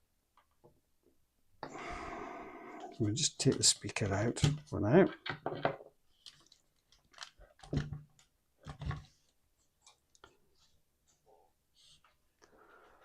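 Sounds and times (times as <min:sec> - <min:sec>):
plastic parts clicking and scraping: 0:02.9 - 0:10.4.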